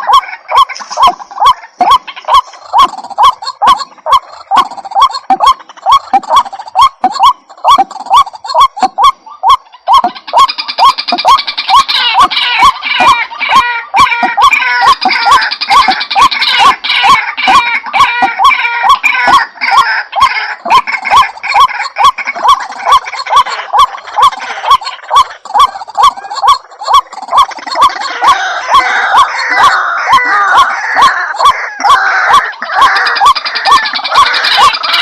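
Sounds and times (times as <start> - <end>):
overlapping bird calls: 0.0 - 35.0
waterhen calling: 0.0 - 35.0.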